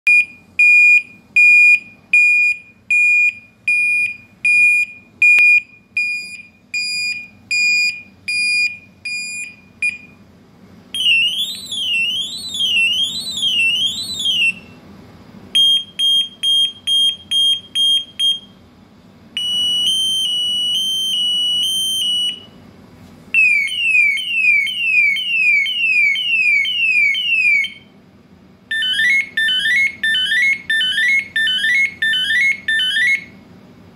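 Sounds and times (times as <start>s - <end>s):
electronic siren tones: 11.0s - 14.8s, 19.4s - 22.5s, 23.4s - 27.9s, 28.7s - 33.3s.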